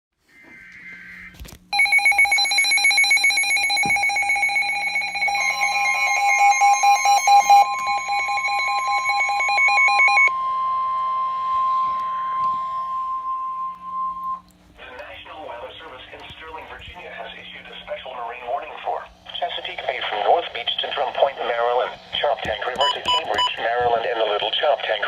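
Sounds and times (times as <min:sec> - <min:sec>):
shrill pulsing alarm beep: 0:00.2 - 0:14.5, 0:22.8 - 0:23.6
steady attention tone: 0:00.3 - 0:25.0.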